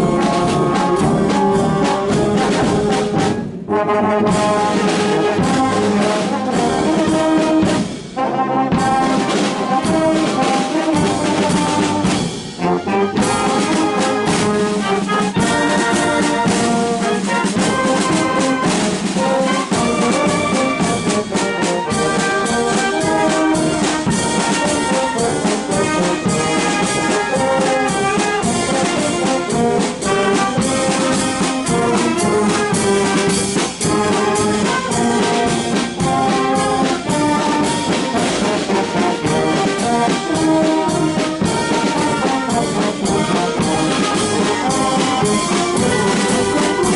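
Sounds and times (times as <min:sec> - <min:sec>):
wind band playing: 0:00.0 - 0:46.9.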